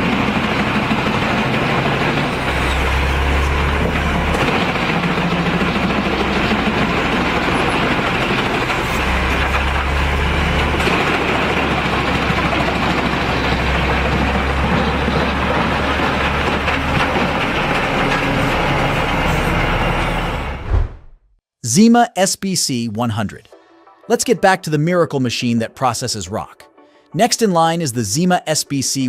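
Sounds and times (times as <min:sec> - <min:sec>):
heavy machinery running: 0:00.0 - 0:20.8.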